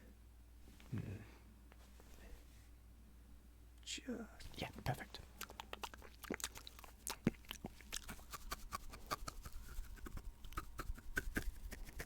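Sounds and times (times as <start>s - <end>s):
teeth biting paintbrush bristles: 5.4s - 12.0s.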